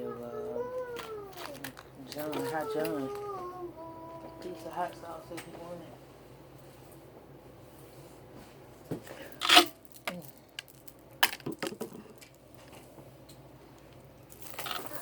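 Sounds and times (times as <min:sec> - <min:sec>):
food packaging crinkle: 0:01.0 - 0:03.2, 0:14.3 - 0:15.0.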